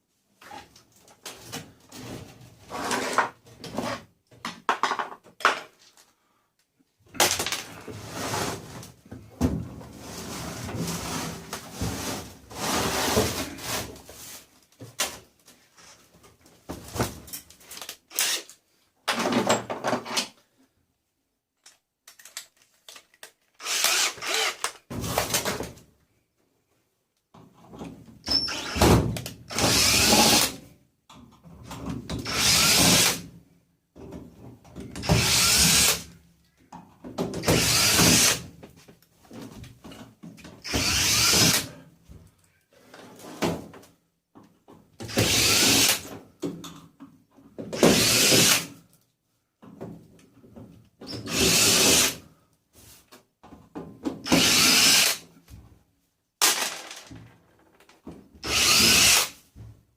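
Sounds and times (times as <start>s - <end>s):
power drill bursts: 23.6s - 24.7s, 29.5s - 30.5s, 32.3s - 33.2s, 35.1s - 36.0s, 37.5s - 38.4s, 40.6s - 41.7s, 45.1s - 46.0s, 47.8s - 48.7s, 51.3s - 52.2s, 54.3s - 55.2s, 58.4s - 59.3s.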